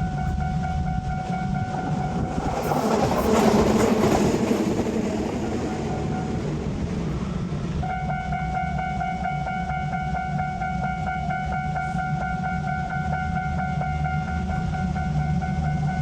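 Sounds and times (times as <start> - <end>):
train passing: 0.0 - 16.0
level crossing warning bell: 7.8 - 16.0.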